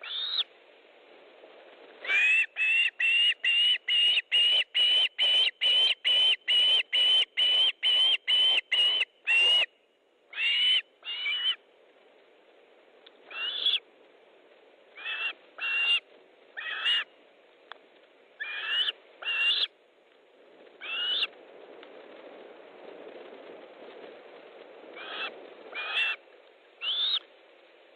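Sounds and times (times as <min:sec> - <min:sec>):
osprey whistled calls: 0:00.0 - 0:00.5, 0:02.1 - 0:09.7, 0:10.4 - 0:11.6, 0:13.3 - 0:13.8, 0:18.4 - 0:19.7, 0:20.8 - 0:21.3, 0:26.8 - 0:27.2.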